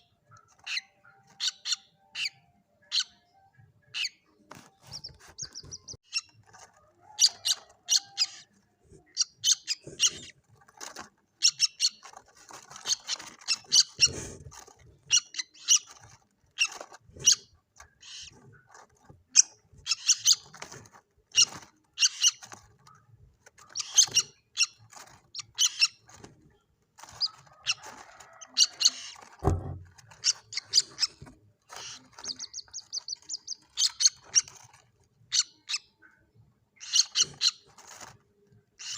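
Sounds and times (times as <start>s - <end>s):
chicks peeping: 0.0s - 38.9s
low thump: 29.4s - 30.0s.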